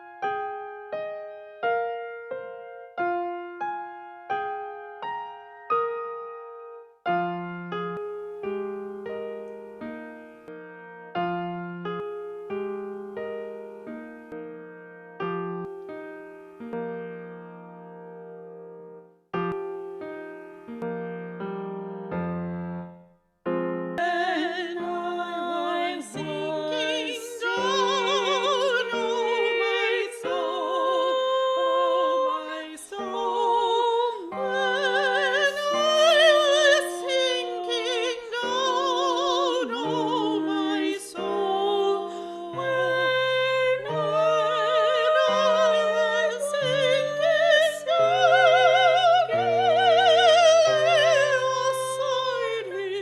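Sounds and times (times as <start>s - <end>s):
sustained keyboard accompaniment: 0.0s - 53.0s
person singing with vibrato: 24.0s - 53.0s.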